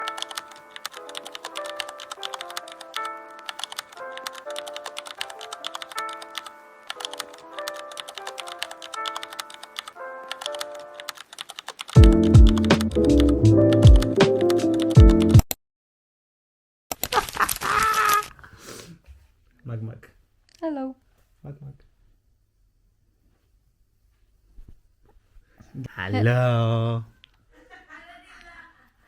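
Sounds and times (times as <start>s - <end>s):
keyboard typing clicks: 0.0s - 15.5s
bass-heavy beat: 12.0s - 14.4s, 15.0s - 15.4s.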